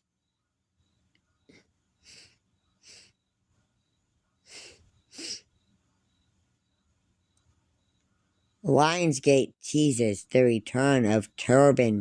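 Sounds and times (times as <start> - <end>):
person breathing noisily: 1.4 - 3.2, 4.4 - 5.5.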